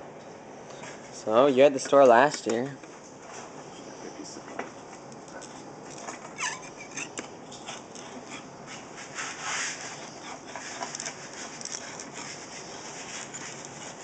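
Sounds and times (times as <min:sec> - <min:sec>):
knife scraping glass: 0:05.5 - 0:14.0
falling squeak: 0:06.3 - 0:07.2.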